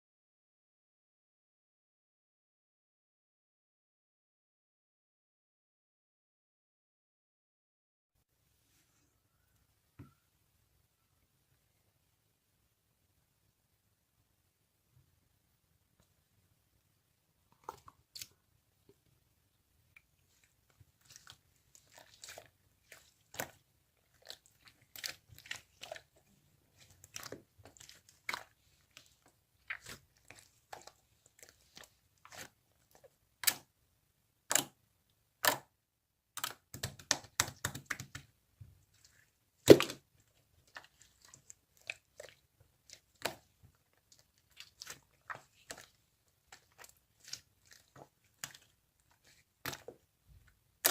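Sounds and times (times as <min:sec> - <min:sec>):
slime clicking and popping: 0:34.5 - 0:34.8, 0:35.4 - 0:35.7, 0:36.4 - 0:38.3, 0:39.6 - 0:40.0.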